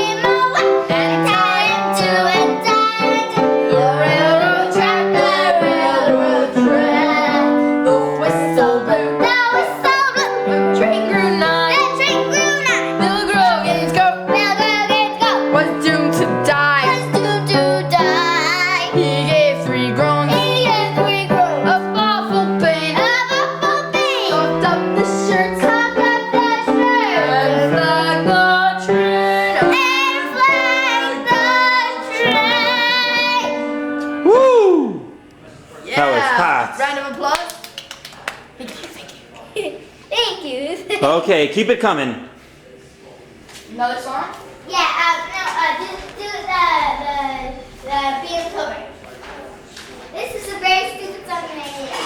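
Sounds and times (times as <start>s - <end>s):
girl singing: 0.0s - 35.0s
piano accompaniment: 0.0s - 35.3s.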